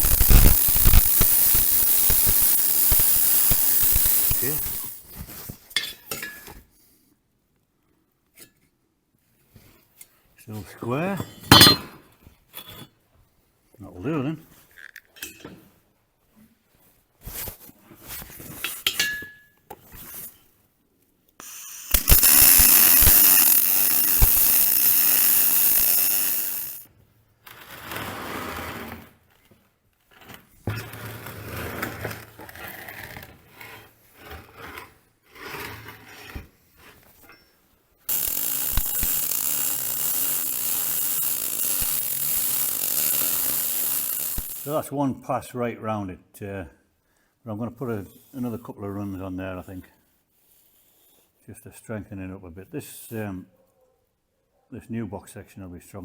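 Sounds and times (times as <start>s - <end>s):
electric arc welding crackling hiss: 0.0s - 5.1s, 21.4s - 26.8s, 38.1s - 44.8s
metal clinks and knocks: 11.3s - 12.0s.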